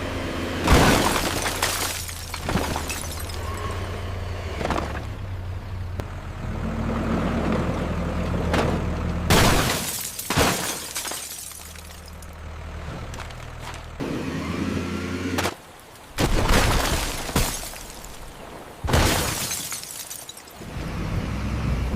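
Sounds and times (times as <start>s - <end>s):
crashing and smashing impacts: 0.6s - 3.6s, 9.3s - 12.3s, 15.4s - 20.6s.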